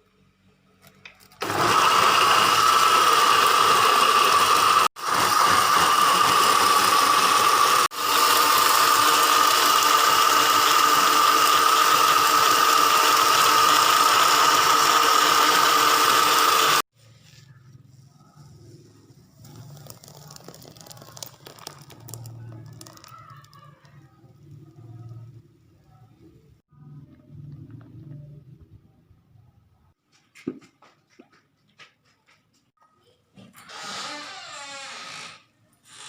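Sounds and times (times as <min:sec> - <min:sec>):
appliance motor whining: 0:01.4 - 0:16.9.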